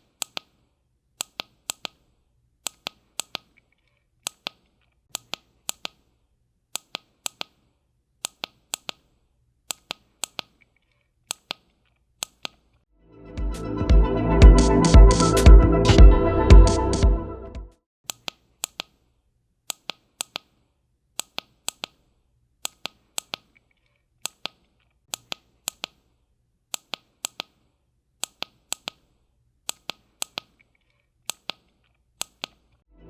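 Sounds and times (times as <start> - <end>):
sharp clicks: 0.2 - 0.5, 1.2 - 2.0, 2.6 - 6.0, 6.7 - 7.6, 8.2 - 9.1, 9.7 - 10.7, 11.3 - 12.6, 22.6 - 23.6, 24.2 - 26.0, 29.7 - 30.7, 31.3 - 32.6.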